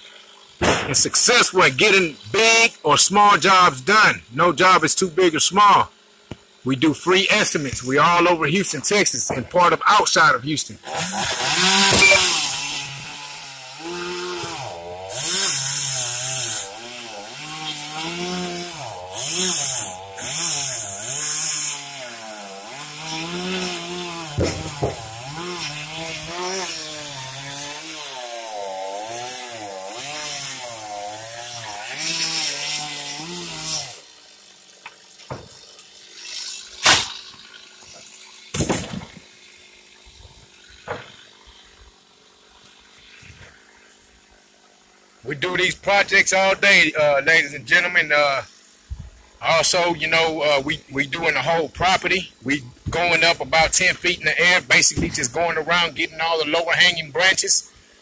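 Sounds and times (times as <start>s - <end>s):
chainsaw cutting wood: 0.0s - 4.1s, 5.5s - 10.2s, 10.8s - 58.0s
sharp knocks: 24.3s - 25.1s.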